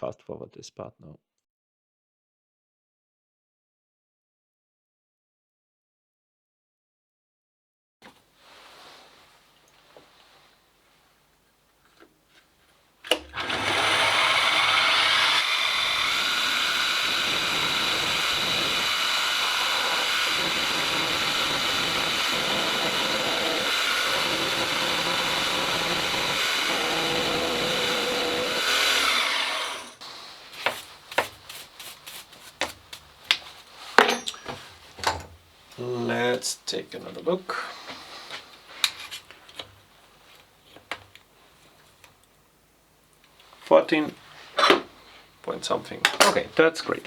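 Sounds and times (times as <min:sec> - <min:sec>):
milling machine whine: 0:13.1 - 0:30.0.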